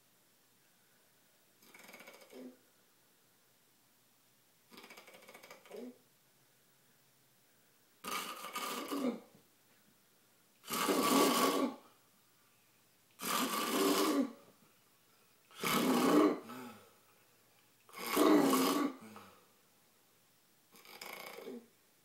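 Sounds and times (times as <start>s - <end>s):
person snoring: 1.6s - 2.6s, 15.5s - 16.9s, 17.9s - 19.4s, 20.8s - 21.7s.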